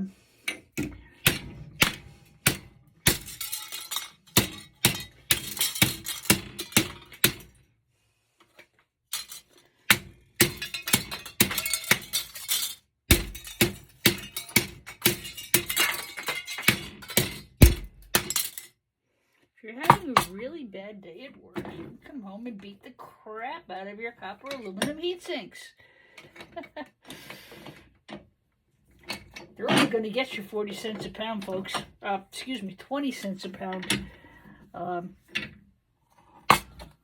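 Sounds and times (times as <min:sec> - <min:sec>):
metal pieces clinking: 0:02.4 - 0:07.5, 0:09.1 - 0:09.7, 0:10.4 - 0:18.7
hammer striking metal: 0:13.1 - 0:18.6.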